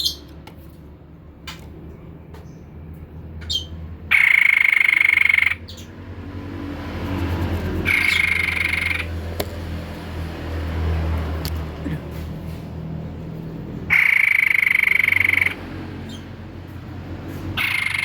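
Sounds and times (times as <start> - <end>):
bird singing trilled notes: 0.0 - 0.3, 3.4 - 6.0, 7.9 - 9.2, 13.9 - 16.3, 17.6 - 18.0.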